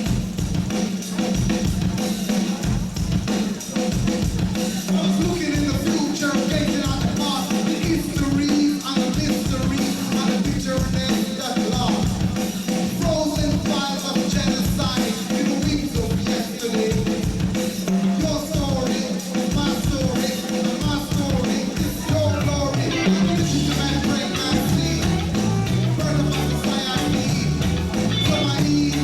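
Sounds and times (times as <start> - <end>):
drum kit beat: 0.0 - 29.0
reggae band playing: 0.0 - 29.0
heavy bass line: 20.8 - 29.0.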